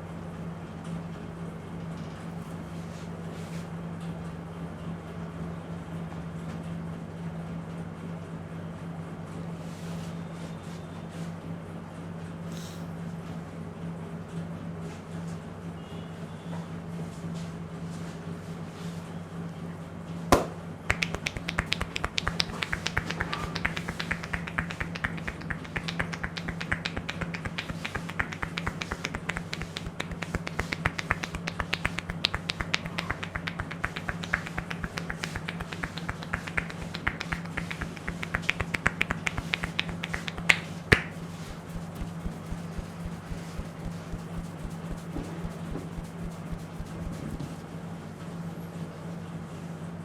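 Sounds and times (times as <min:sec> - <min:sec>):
hair cracking snaps: 0:20.4 - 0:47.3.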